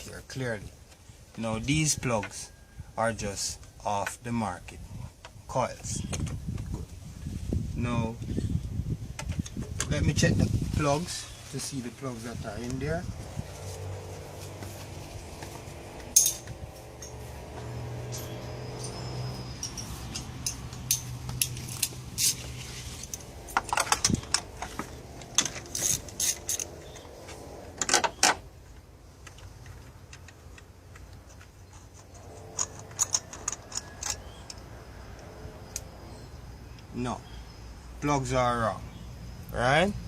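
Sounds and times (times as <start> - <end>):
metal tools clinking: 16.1 - 27.1, 29.2 - 34.7.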